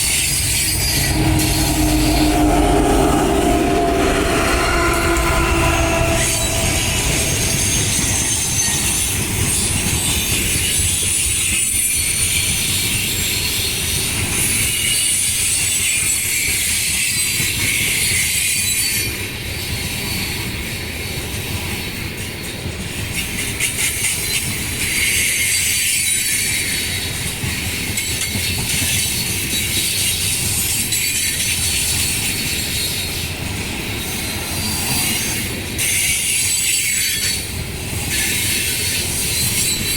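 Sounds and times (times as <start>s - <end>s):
low train rumble: 0.0s - 11.3s, 26.6s - 39.9s
train wheels squealing: 0.0s - 21.4s, 23.2s - 39.9s.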